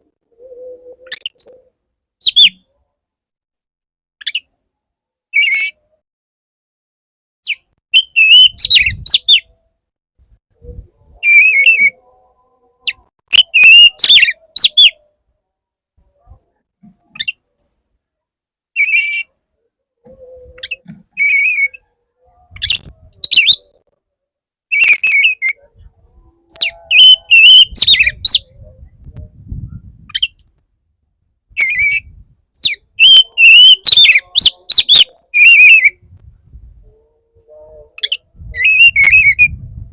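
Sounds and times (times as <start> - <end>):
bird singing whistled notes: 7.5 - 9.5, 12.8 - 15.0, 22.6 - 23.7, 26.5 - 28.7, 31.5 - 36.0, 37.6 - 39.6.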